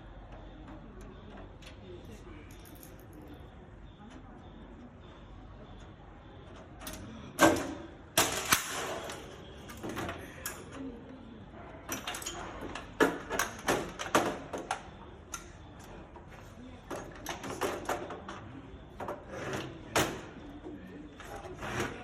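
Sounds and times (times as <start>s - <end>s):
metal parts clicking and clattering: 11.9s - 15.5s.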